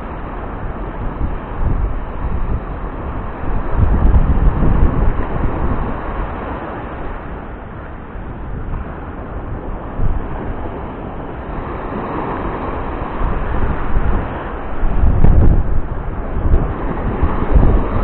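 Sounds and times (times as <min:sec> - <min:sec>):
sea water rushing: 0:00.0 - 0:18.0
wind buffeting microphone: 0:00.0 - 0:18.0.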